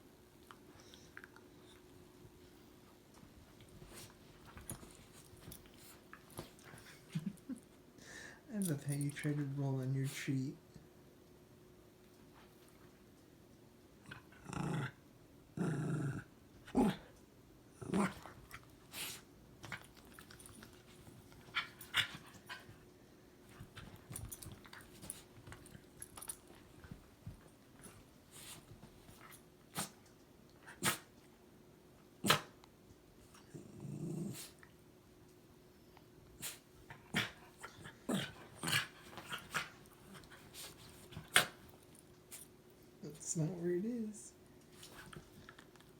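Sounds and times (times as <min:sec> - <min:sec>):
dog growling playfully: 0:14.0 - 0:18.6, 0:33.3 - 0:34.7, 0:36.9 - 0:40.6.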